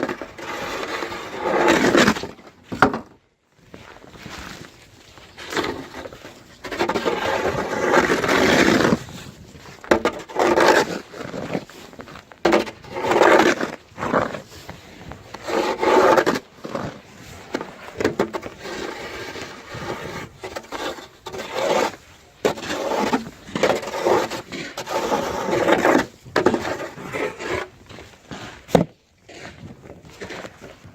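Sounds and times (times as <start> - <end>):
shovel scraping snow: 0.0 - 2.5, 3.8 - 30.9.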